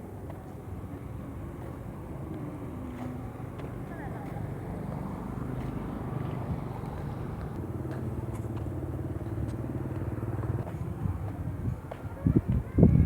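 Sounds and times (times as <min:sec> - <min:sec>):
vehicle engine humming: 0:01.5 - 0:11.6.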